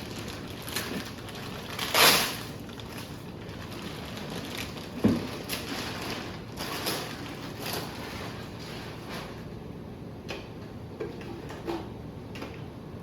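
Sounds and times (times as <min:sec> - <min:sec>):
wrapping rustling: 0:00.0 - 0:09.5.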